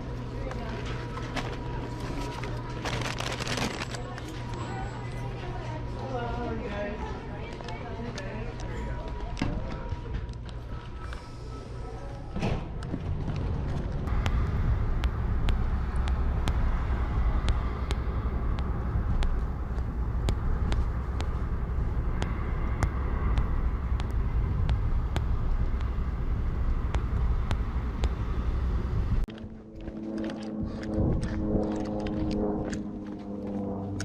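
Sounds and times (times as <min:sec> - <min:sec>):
car road and engine rumble: 0:12.8 - 0:29.9
regular clicking: 0:14.1 - 0:29.4.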